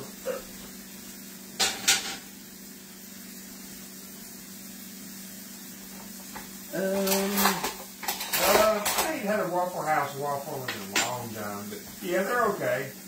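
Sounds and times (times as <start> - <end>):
faint hiss: 0.0 - 13.0
kitchen utensils clattering: 1.6 - 2.2, 6.3 - 9.4, 10.6 - 11.4.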